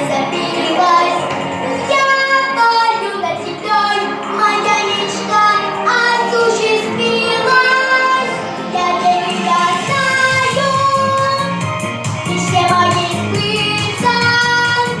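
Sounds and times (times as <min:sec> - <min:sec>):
girl singing: 0:00.0 - 0:11.6, 0:12.2 - 0:15.0.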